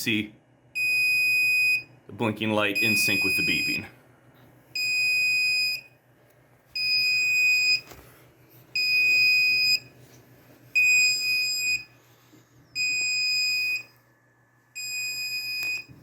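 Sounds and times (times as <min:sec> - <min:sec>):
high alarm beeps: 0:00.8 - 0:01.9, 0:02.8 - 0:03.9, 0:04.8 - 0:05.9, 0:06.8 - 0:07.9, 0:08.8 - 0:09.9, 0:10.8 - 0:11.9, 0:12.8 - 0:13.9, 0:14.8 - 0:16.0.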